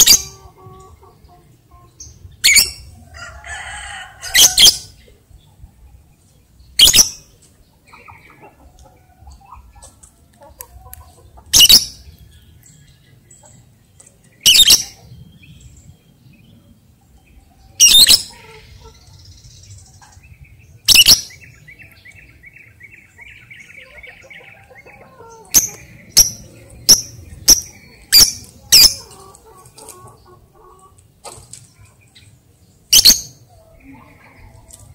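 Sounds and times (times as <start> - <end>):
faint bird chatter: 0.0 - 34.9
lovebird shrill calls: 2.4 - 2.8, 6.8 - 7.2, 11.5 - 12.0, 14.4 - 15.0, 17.8 - 18.3, 20.9 - 21.4, 25.5 - 29.1, 32.9 - 33.4.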